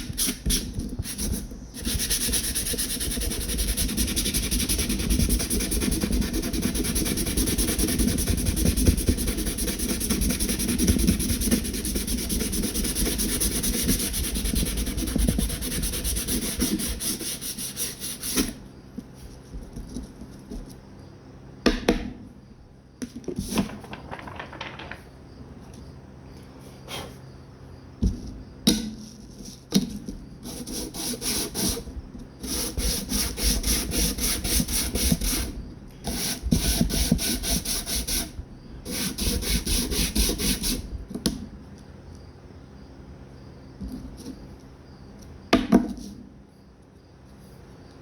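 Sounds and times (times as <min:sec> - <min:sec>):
sandpaper scratching: 0:00.2 - 0:18.6.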